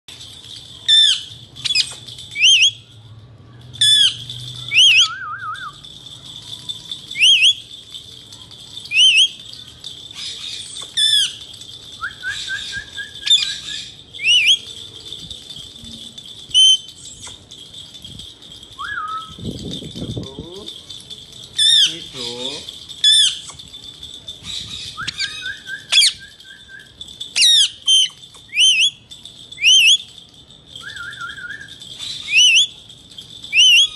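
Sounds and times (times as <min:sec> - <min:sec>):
parakeet trilling chatter: 0:03.8 - 0:05.1, 0:08.9 - 0:11.5, 0:12.4 - 0:14.6, 0:21.6 - 0:22.2, 0:23.0 - 0:23.6, 0:24.4 - 0:26.2, 0:27.4 - 0:29.0, 0:33.5 - 0:33.9
parakeet screeching calls: 0:27.4 - 0:29.0.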